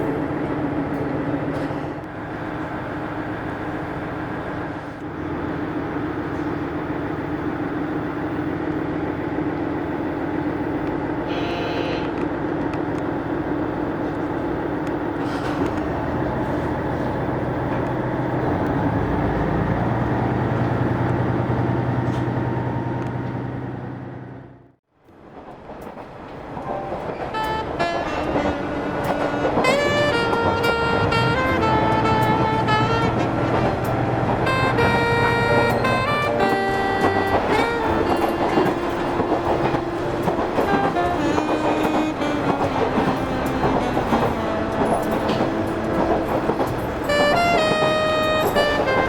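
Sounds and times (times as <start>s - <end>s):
diesel railcar engine drone: 0.0s - 49.0s
rail running noise: 0.0s - 49.0s
brief high tone: 11.3s - 12.2s.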